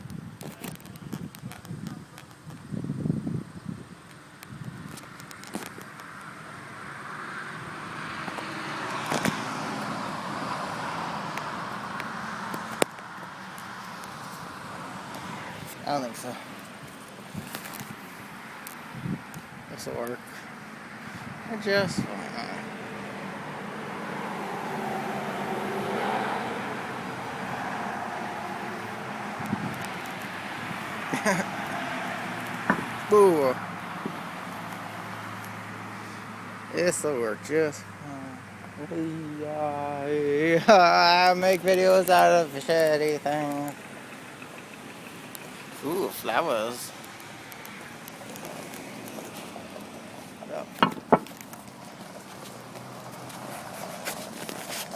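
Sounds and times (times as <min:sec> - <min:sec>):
vehicle passing: 0:05.8 - 0:54.9.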